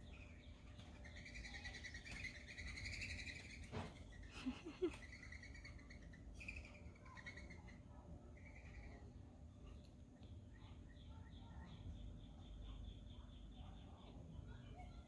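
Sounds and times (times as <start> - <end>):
bird twittering: 0.0 - 7.8.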